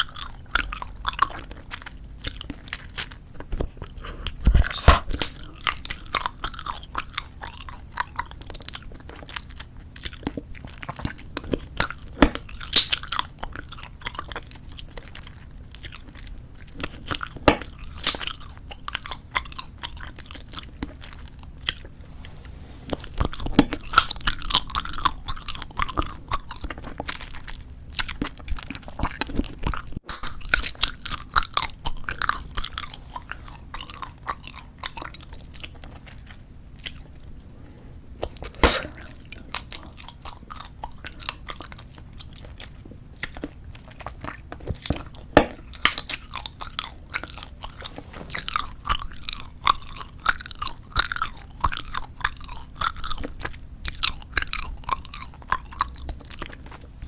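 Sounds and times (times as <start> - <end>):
bubblegum chewing wet smacks: 38.1 - 57.0.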